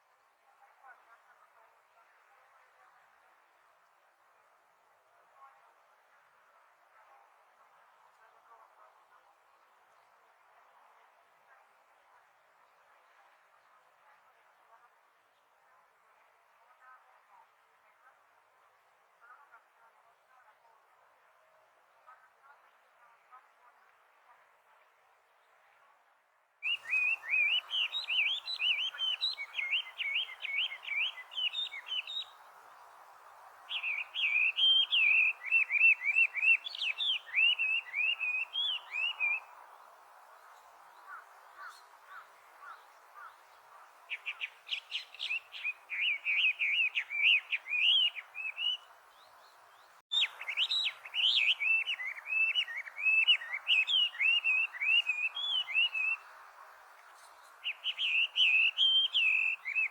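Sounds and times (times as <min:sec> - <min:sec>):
bird singing whistled notes: 0:26.6 - 0:32.4, 0:33.7 - 0:39.5, 0:44.1 - 0:56.3, 0:57.6 - 0:59.9.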